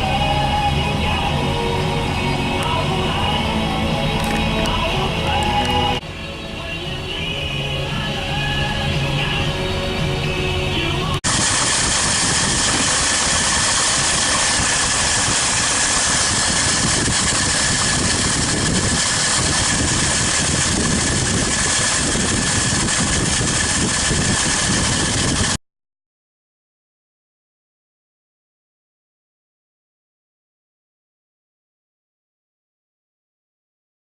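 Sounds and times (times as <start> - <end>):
car engine running: 0.0 - 25.6.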